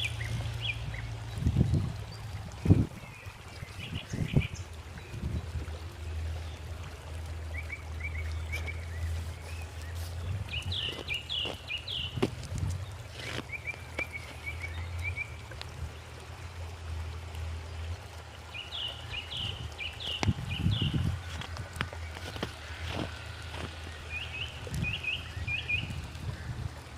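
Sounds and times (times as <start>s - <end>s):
small birds chirping: 7.4s - 16.2s, 17.6s - 26.5s.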